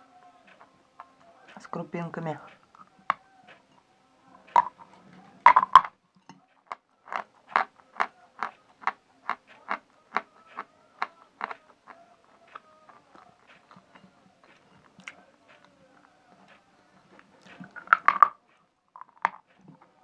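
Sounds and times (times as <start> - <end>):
person chewing chalk crunching: 17.2 - 18.3.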